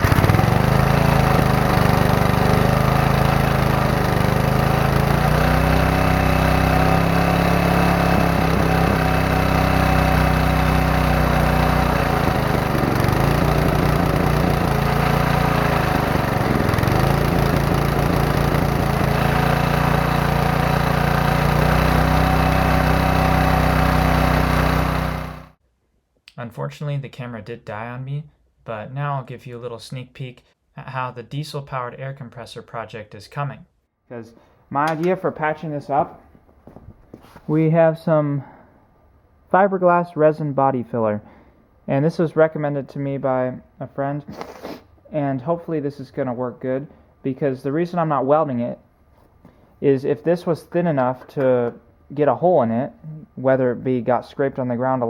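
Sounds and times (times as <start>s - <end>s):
small engine running: 0.0s - 25.6s.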